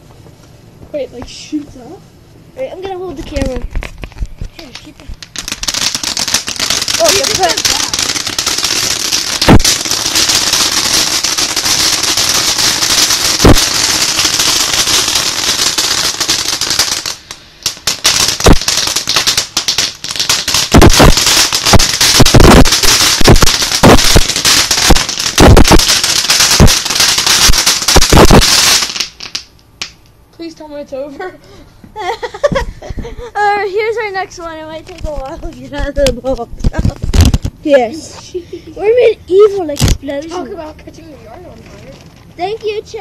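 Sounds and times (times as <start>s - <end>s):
firework crack: 2.8s - 30.2s, 32.0s - 40.6s
firework bangs and pops: 3.1s - 30.0s, 34.9s - 37.6s, 39.8s - 40.1s
firework hissing spray: 5.2s - 29.4s.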